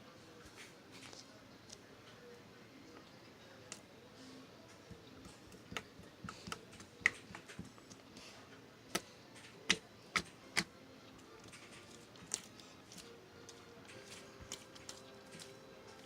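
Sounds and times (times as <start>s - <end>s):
sharp clicks and taps: 4.9s - 8.0s, 8.9s - 10.7s.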